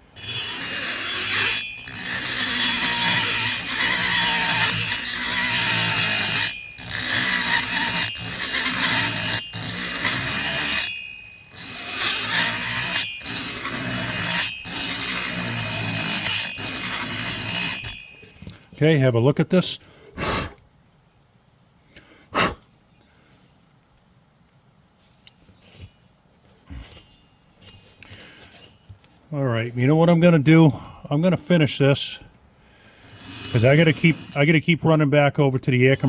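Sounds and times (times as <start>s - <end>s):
rotary grinder cutting metal: 0.0s - 18.8s, 33.0s - 34.6s.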